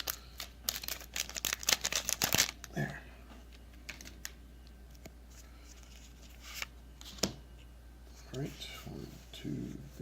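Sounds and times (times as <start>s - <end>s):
foil wrapper crinkling and tearing: 0.0s - 2.7s.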